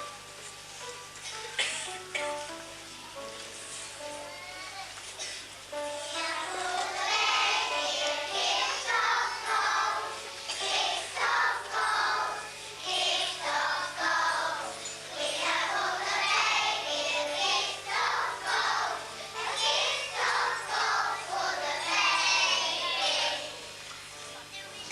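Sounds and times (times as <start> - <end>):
musical accompaniment: 0.0 - 24.9
children singing: 6.0 - 23.6.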